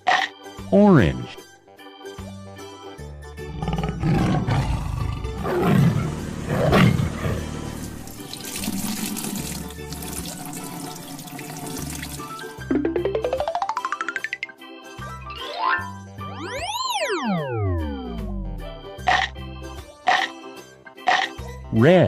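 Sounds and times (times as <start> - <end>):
children's background music: 0.0 - 5.3, 6.9 - 22.0
tiger roar: 3.4 - 7.8.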